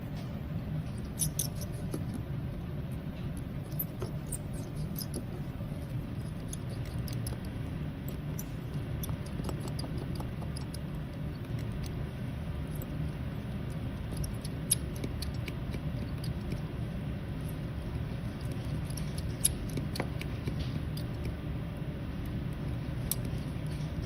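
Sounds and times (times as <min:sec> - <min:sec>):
steady low hum: 0:00.0 - 0:24.0
small tools clicking on watch case: 0:06.2 - 0:12.0.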